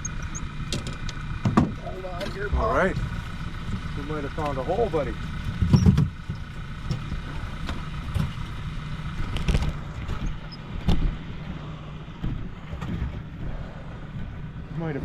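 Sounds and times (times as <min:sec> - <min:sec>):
boat motor running low: 0:00.0 - 0:15.0
knocks against boat: 0:00.7 - 0:03.1.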